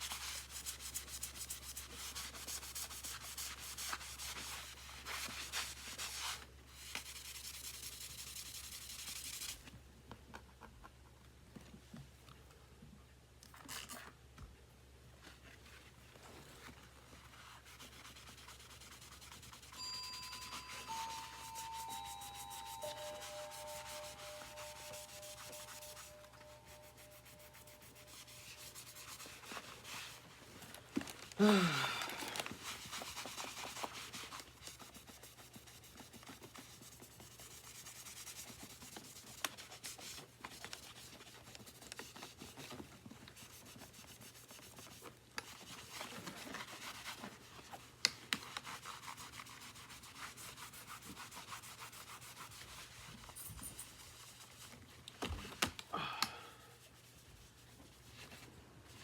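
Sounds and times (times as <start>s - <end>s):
hand rubbing and scrubbing surface: 17.2s - 30.3s
faint held tones: 19.8s - 28.7s.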